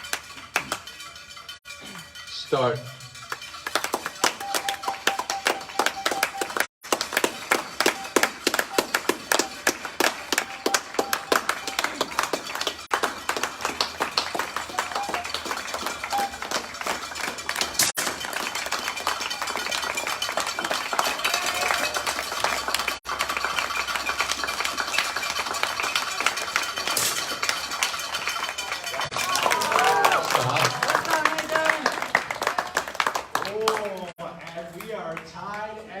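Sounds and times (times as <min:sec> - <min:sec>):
spectators clapping: 0:00.0 - 0:01.0, 0:03.3 - 0:35.7
clinks and taps: 0:23.6 - 0:29.1.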